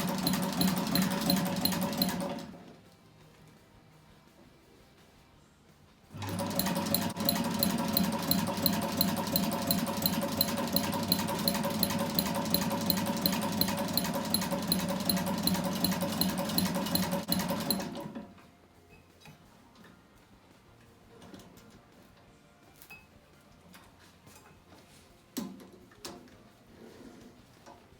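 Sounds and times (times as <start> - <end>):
sewing machine stitching: 0.0 - 2.7, 6.2 - 18.3.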